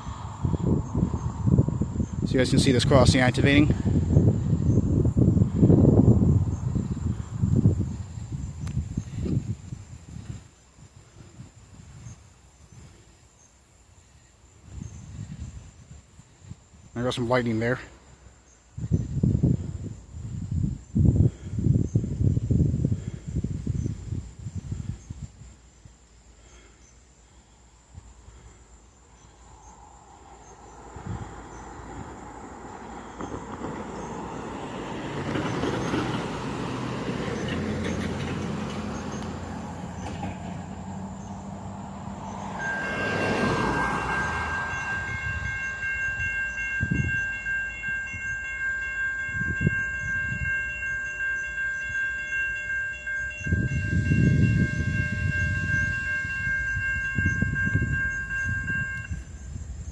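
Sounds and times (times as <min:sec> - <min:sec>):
freight train rumble: 0:00.0 - 0:13.0, 0:27.6 - 0:59.9
railroad crossing bell ringing: 0:30.4 - 0:59.8.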